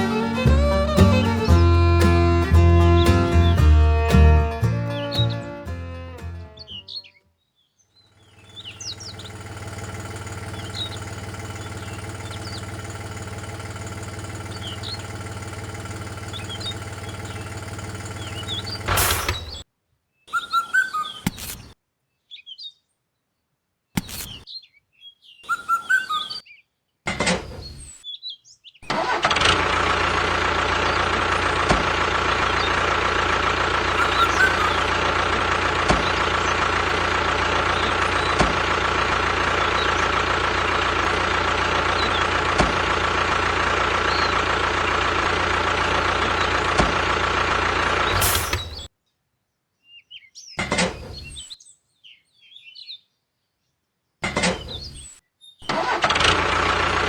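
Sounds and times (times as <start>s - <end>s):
birds chirping: 0.0s - 3.8s, 6.6s - 19.6s, 20.2s - 22.8s, 24.0s - 48.9s, 54.2s - 56.0s
small motor running: 8.3s - 19.6s, 29.1s - 48.9s.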